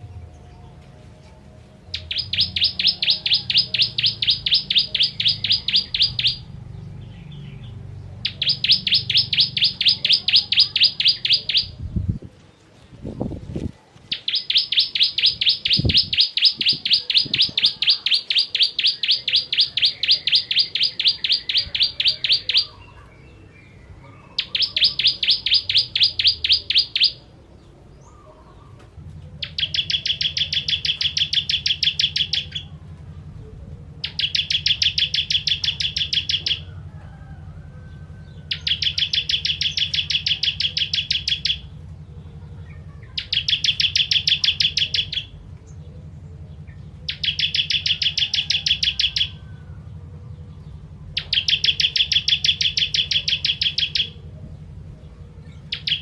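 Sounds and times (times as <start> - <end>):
bird singing high trills: 1.9 - 11.8, 14.1 - 27.3, 29.4 - 32.8, 34.0 - 36.7, 38.4 - 41.8, 42.8 - 45.4, 47.0 - 49.8, 50.5 - 56.0.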